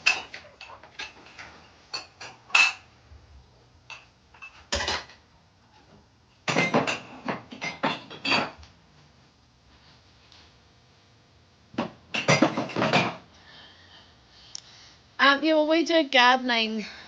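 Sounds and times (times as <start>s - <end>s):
cutlery clinking on a plate: 6.5s - 8.6s, 11.8s - 13.2s.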